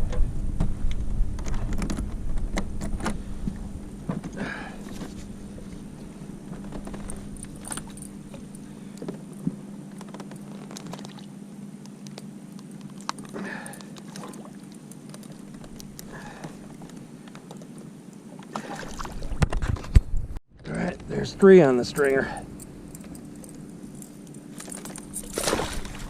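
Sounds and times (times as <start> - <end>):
steady low hum: 0.0 - 26.0
fishing gear clicking and rattling: 6.5 - 11.2, 11.8 - 18.6, 21.5 - 26.0.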